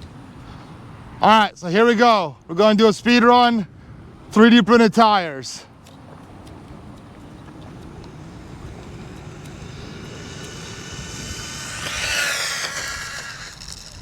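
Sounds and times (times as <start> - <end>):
toy car electric motor whining: 7.5 - 14.0.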